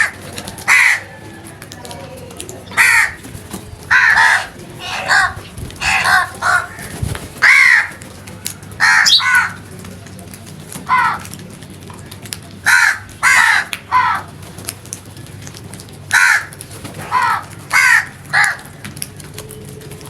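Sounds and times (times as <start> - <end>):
crows cawing: 0.0 - 1.5, 2.7 - 3.3, 3.9 - 9.7, 10.8 - 11.4, 12.6 - 14.4, 16.1 - 18.9.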